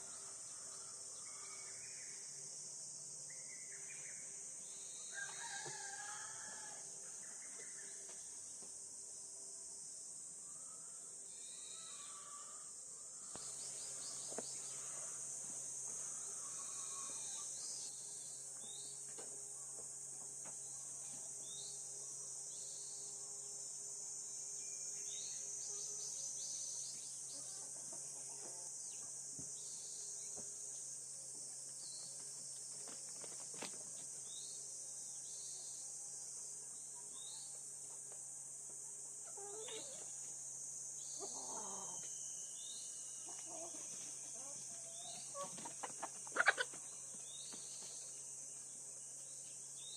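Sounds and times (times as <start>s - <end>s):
high insect drone: 0.0s - 49.9s
chicken clucking: 45.2s - 46.8s.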